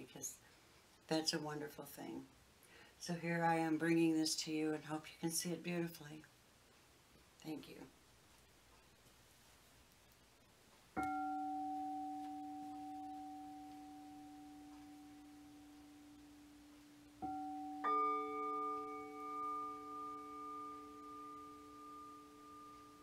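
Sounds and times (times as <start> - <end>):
higher singing bowl ringing: 11.0 - 23.0
singing bowl ringing: 11.0 - 23.0.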